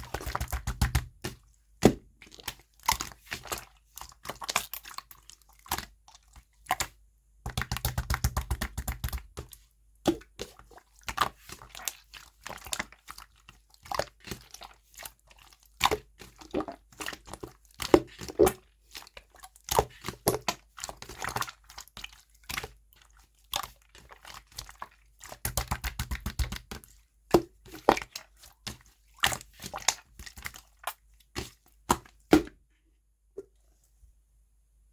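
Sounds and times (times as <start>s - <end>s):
air bubble pops: 32.3s - 32.6s.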